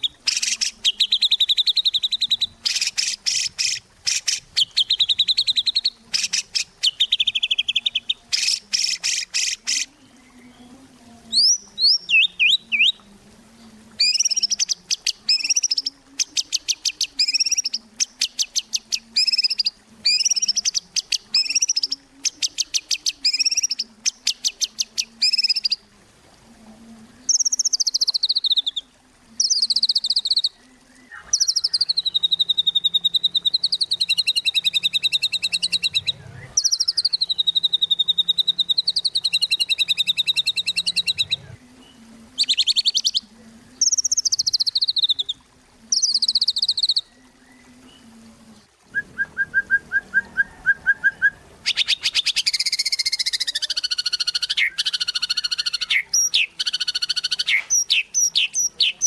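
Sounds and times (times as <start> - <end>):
bird singing trills: 0.0 - 13.1, 14.0 - 25.8, 27.2 - 43.2, 43.8 - 48.0, 48.6 - 59.0
faint low hum: 9.9 - 27.4.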